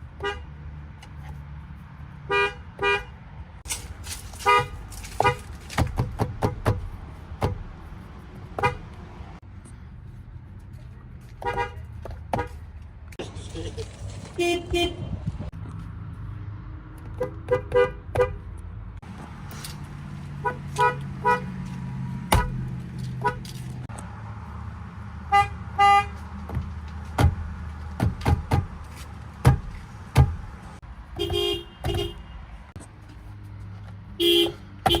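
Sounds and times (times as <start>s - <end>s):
engine and traffic rumble: 0.0s - 35.0s
car horn short beeps: 34.2s - 35.0s.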